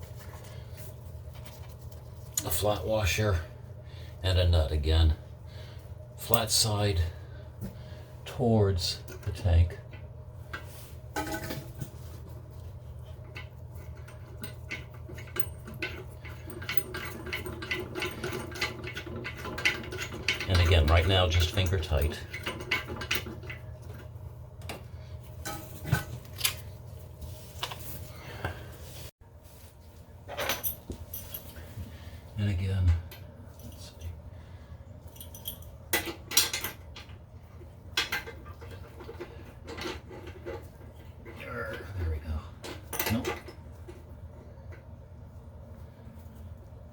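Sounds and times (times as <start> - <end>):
steady low hum: 0.0 - 46.9
washer and nut clicking: 13.2 - 26.7, 35.2 - 41.1.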